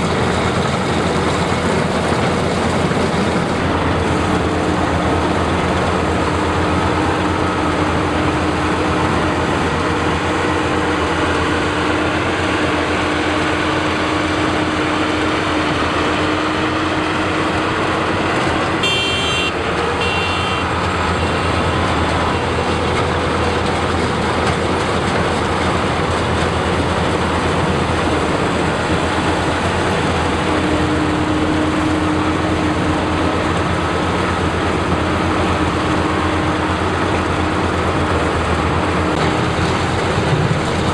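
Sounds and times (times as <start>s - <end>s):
combine harvester running: 0.0s - 40.9s.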